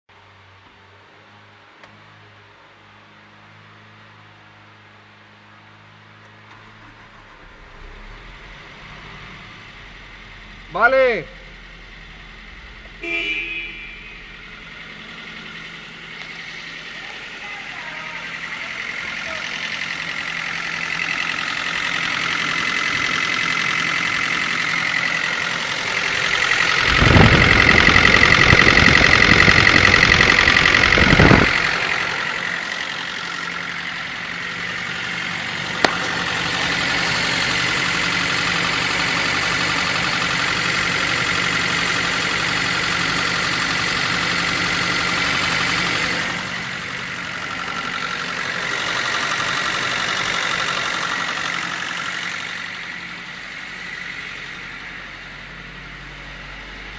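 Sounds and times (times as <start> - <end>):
car engine idling: 3.4 - 56.9
steady high whine: 6.5 - 36.9.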